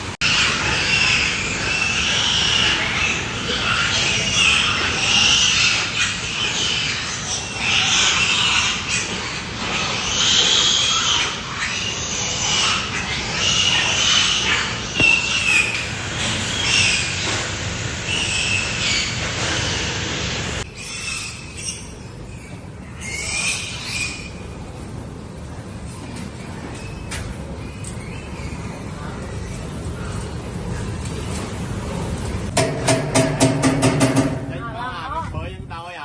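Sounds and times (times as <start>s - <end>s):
piglets squealing: 0.2s - 21.9s, 23.0s - 24.4s.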